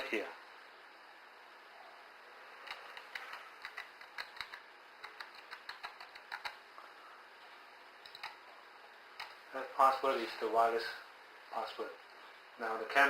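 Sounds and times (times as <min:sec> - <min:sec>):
keyboard typing clicks: 0:02.6 - 0:06.6, 0:08.0 - 0:08.4.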